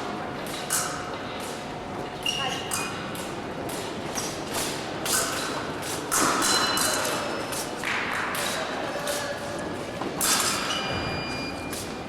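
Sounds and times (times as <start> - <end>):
sports hall hum: 0.0 - 12.0.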